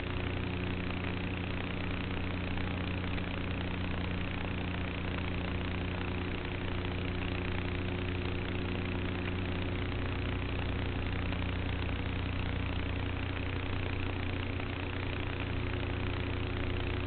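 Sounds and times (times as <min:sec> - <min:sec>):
model plane motor humming: 0:00.0 - 0:17.0.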